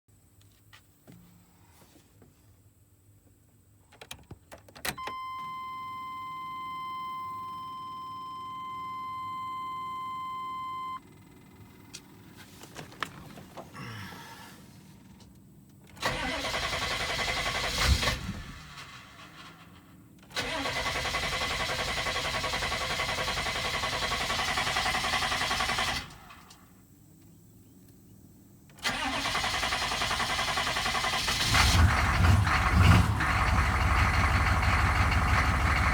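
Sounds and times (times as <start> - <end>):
diesel engine cranking and starting: 15.9 - 26.7, 28.8 - 35.9.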